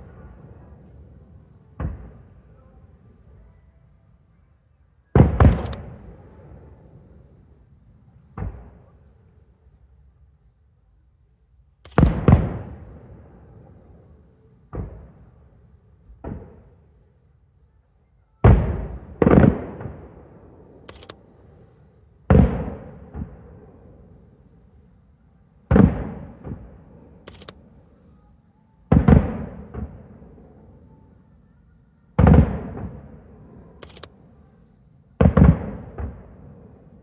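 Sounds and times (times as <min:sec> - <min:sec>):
firework booms with rolling echo: 0:00.0 - 0:03.4, 0:05.1 - 0:09.2, 0:11.9 - 0:17.0, 0:18.4 - 0:27.2, 0:28.9 - 0:31.4, 0:32.1 - 0:33.8, 0:35.0 - 0:37.0
firework sharp cracks: 0:05.2 - 0:07.4, 0:11.9 - 0:13.4, 0:18.5 - 0:21.6, 0:25.7 - 0:27.9, 0:28.9 - 0:30.6, 0:35.2 - 0:37.0.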